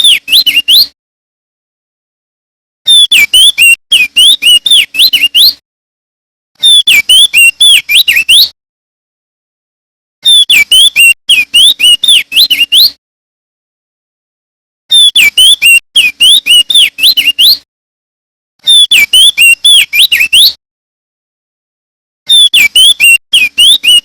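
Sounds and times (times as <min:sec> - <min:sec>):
bird singing whistled notes: 0:00.0 - 0:01.0, 0:02.9 - 0:05.6, 0:06.6 - 0:08.6, 0:10.2 - 0:13.0, 0:14.9 - 0:17.6, 0:18.6 - 0:20.6, 0:22.3 - 0:24.0.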